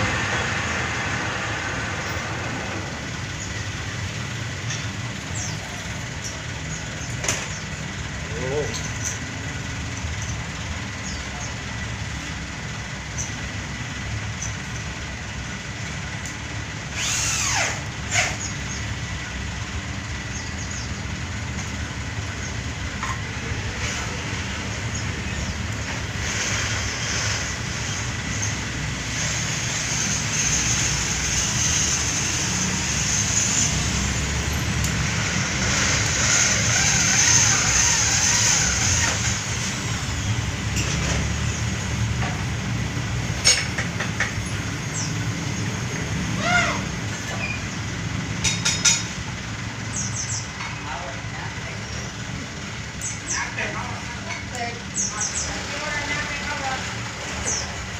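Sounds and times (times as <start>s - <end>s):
metal lathe running: 16.9s - 18.4s, 25.2s - 40.8s
cutting tool hiss: 17.0s - 18.5s.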